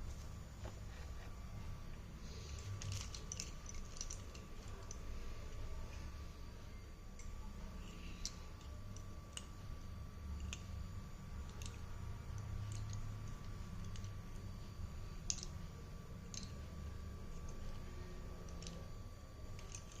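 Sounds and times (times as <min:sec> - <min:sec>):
low steady hum: 0:00.0 - 0:20.0
pencils knocking together: 0:02.6 - 0:05.0, 0:15.2 - 0:15.6, 0:16.2 - 0:16.6.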